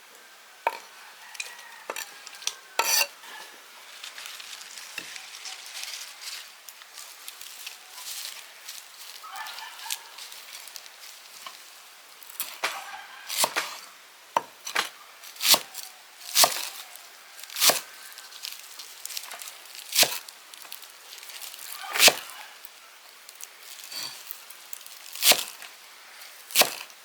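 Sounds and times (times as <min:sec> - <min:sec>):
chopping on wood: 0:12.5 - 0:13.8, 0:21.9 - 0:22.3, 0:25.2 - 0:25.5, 0:26.6 - 0:26.9.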